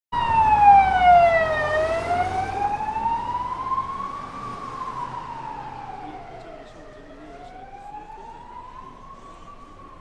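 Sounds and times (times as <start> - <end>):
ambulance siren wailing: 0.1 - 10.0
street traffic rumble: 0.2 - 10.0.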